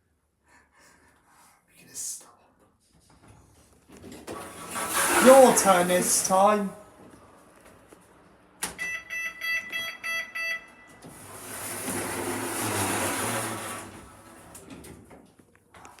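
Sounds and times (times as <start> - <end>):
lift doors sliding: 4.2 - 9.3, 9.9 - 15.1
short electronic beeps: 8.8 - 11.0.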